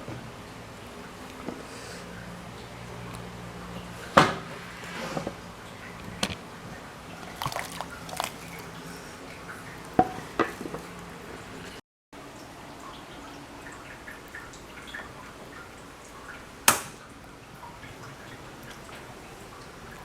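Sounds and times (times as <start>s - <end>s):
dripping liquid: 5.5s - 20.0s.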